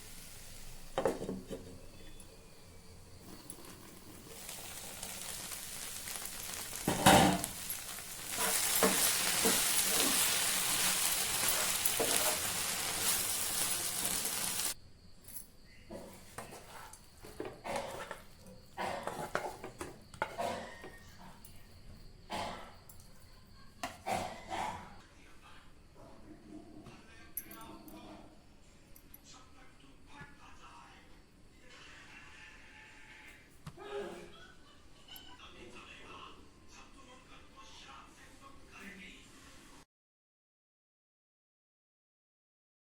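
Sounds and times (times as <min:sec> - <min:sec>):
food sizzling in hot oil: 0:00.0 - 0:14.8
utensils knocking and clinking: 0:06.1 - 0:14.8.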